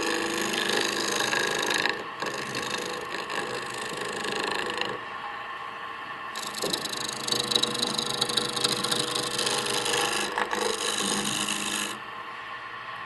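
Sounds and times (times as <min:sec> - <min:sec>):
tool scraping wood on lathe: 0:00.0 - 0:05.0, 0:06.4 - 0:12.0
lathe humming: 0:00.0 - 0:05.3, 0:06.4 - 0:12.6.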